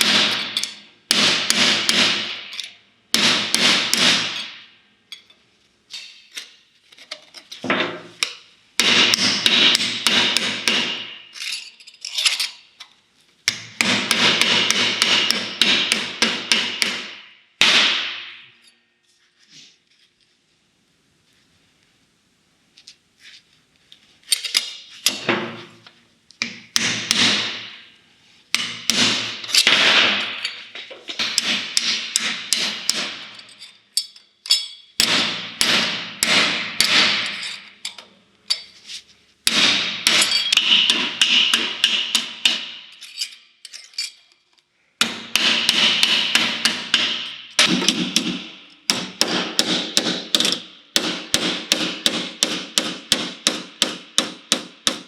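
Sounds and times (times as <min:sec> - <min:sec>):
hammer striking sheet metal: 0:00.0 - 0:04.8, 0:08.8 - 0:11.3, 0:13.5 - 0:18.6, 0:26.4 - 0:27.9, 0:28.5 - 0:33.4, 0:35.0 - 0:37.6, 0:39.4 - 0:43.0, 0:45.0 - 0:55.0.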